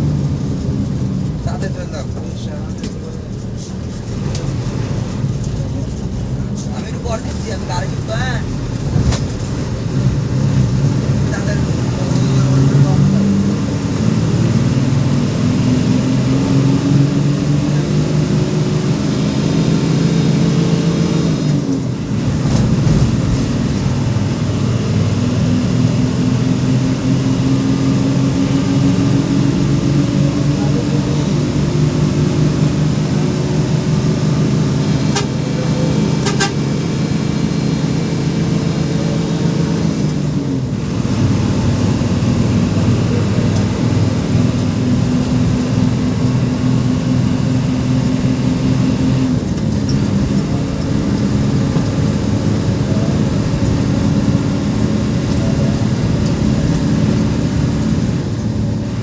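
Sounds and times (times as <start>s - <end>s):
bus engine droning under load: 0.0s - 59.0s.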